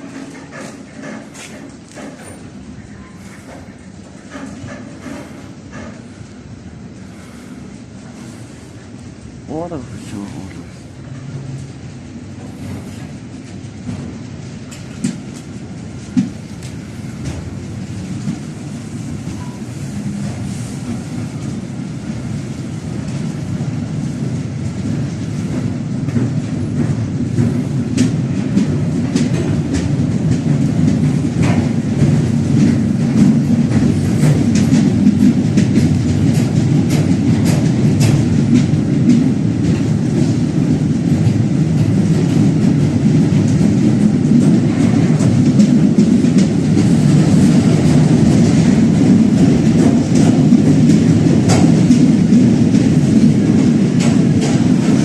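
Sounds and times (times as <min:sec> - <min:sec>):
freight train rumbling past: 0:00.0 - 0:55.0
wheels clacking over rail joints: 0:00.0 - 0:55.0
train wheel squeal: 0:02.0 - 0:06.0, 0:19.3 - 0:20.5.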